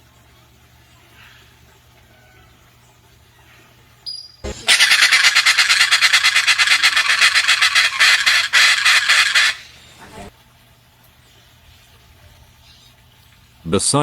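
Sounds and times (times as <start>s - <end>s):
parrot rasping scream: 4.7s - 9.7s.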